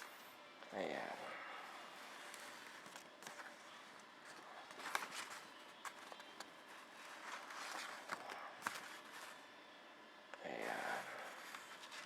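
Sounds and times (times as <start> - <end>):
paper rustling: 2.0 - 9.4, 11.2 - 12.0.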